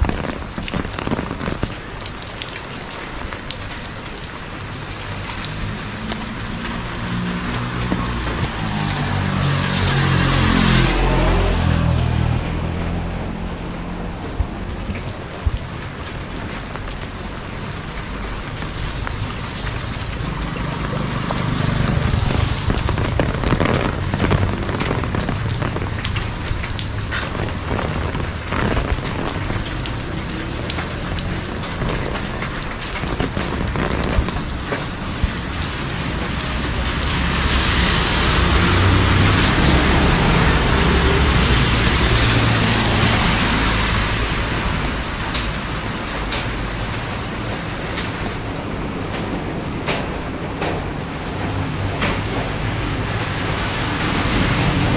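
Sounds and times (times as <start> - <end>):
heavy rain pouring: 0.0 - 54.9
low rumble: 19.8 - 36.8.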